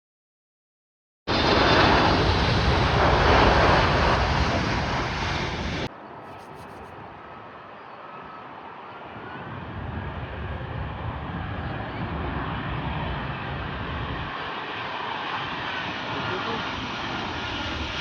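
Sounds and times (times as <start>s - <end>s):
steady jet noise: 1.3s - 7.8s, 12.8s - 18.0s
jet engines rumbling overhead: 1.3s - 18.0s.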